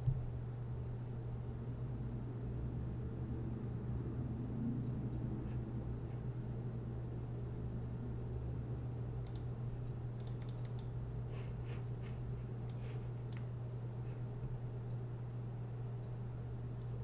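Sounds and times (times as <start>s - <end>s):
steady low hum: 0.0s - 17.0s
keyboard typing clicks: 9.2s - 9.5s, 10.2s - 10.9s.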